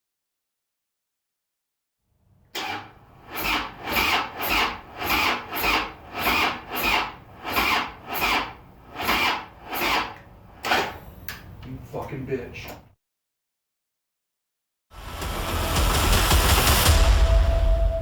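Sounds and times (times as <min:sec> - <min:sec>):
hand tool rasping: 0:03.3 - 0:11.0.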